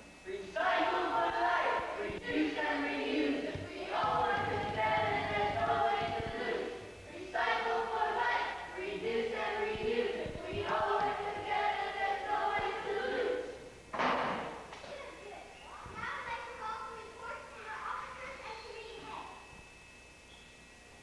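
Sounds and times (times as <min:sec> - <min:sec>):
children singing together: 0:00.3 - 0:13.7.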